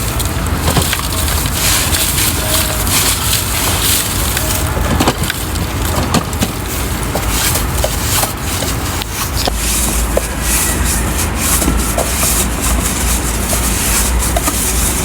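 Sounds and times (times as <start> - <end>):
toy truck rattling and scraping: 0.0 - 15.0.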